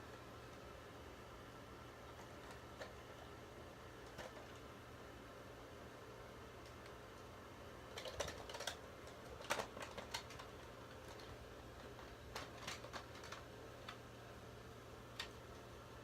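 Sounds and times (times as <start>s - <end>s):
faint steady hum: 0.0s - 16.0s
plastic parts clicking: 7.9s - 14.0s, 15.1s - 15.6s.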